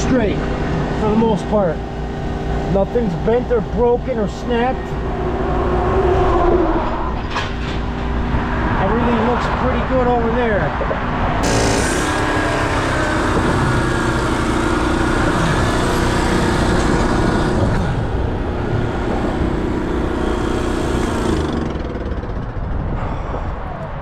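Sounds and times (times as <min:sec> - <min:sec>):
engine running steadily: 0:00.0 - 0:23.9
wide rushing noise: 0:04.8 - 0:09.6.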